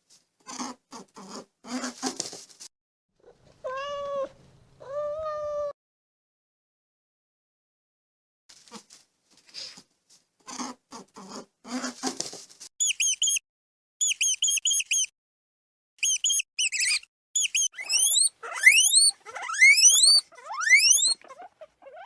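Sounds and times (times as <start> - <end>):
small animal squeaking: 12.8 - 13.4, 14.0 - 15.1, 16.0 - 22.0.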